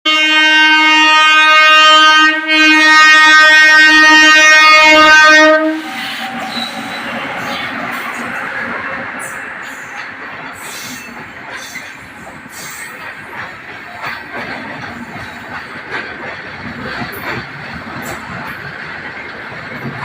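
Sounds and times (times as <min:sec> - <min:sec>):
train wheels rumbling on rails: 0:01.4 - 0:20.0.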